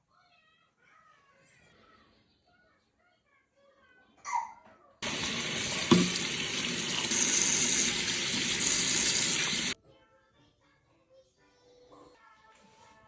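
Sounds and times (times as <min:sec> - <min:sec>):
tap water running into sink: 0:05.0 - 0:09.8.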